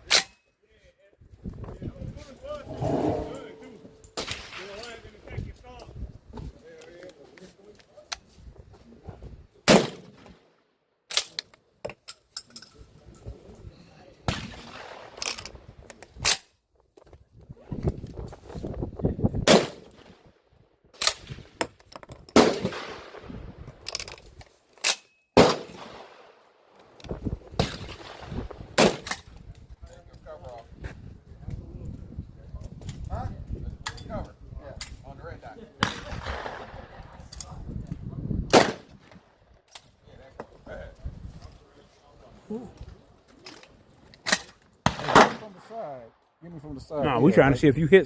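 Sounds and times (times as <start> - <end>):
gunshots: 35.8 - 36.9, 38.5 - 38.9, 44.8 - 45.5.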